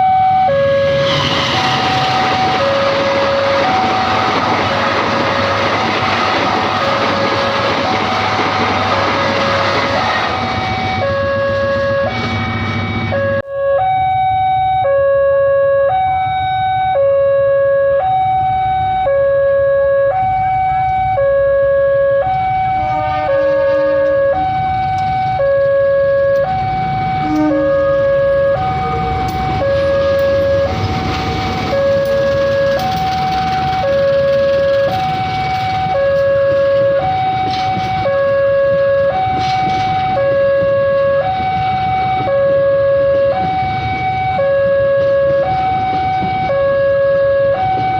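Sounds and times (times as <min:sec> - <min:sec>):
level crossing warning siren: 0:00.0 - 0:47.9.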